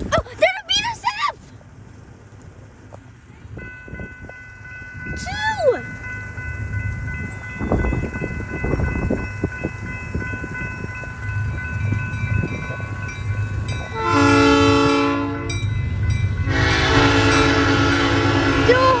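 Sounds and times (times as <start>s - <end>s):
locomotive rumble on rails: 0.0s - 19.0s
locomotive air horn: 13.9s - 15.6s, 16.4s - 19.0s.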